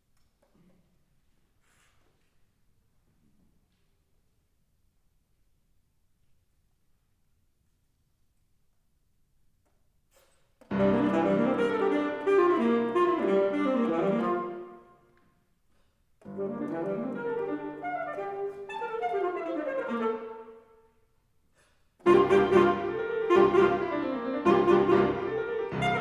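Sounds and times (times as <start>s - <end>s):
saxophone and piano playing: 10.7s - 14.9s, 16.2s - 20.6s, 22.0s - 26.0s.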